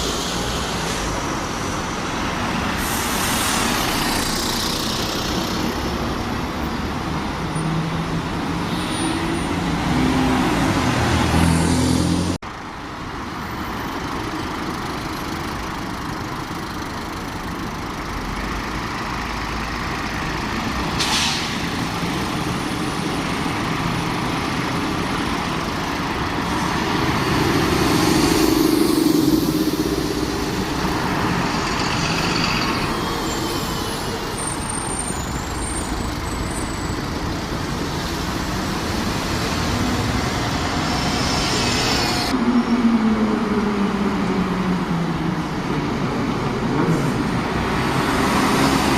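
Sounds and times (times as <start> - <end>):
diesel bus engines running: 0.0 - 48.9
air hiss: 2.8 - 4.0.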